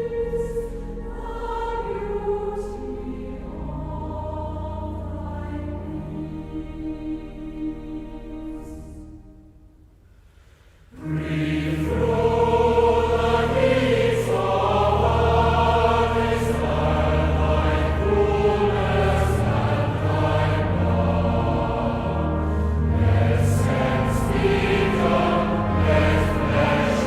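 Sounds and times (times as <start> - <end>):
choir singing: 0.0 - 9.2, 10.9 - 27.0
sustained low chords: 11.0 - 27.0.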